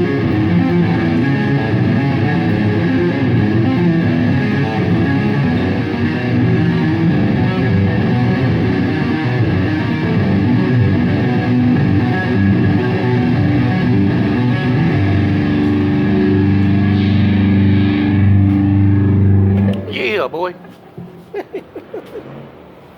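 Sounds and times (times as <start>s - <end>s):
live rock band with distorted guitar: 0.0s - 19.9s.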